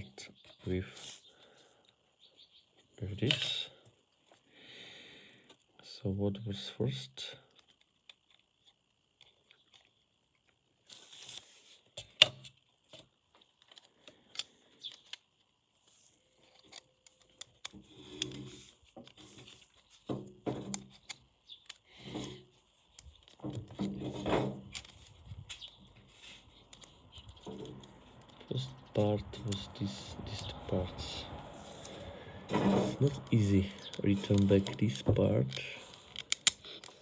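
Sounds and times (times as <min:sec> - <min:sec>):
small plastic pieces clicking: 0:16.4 - 0:28.6, 0:33.4 - 0:37.0.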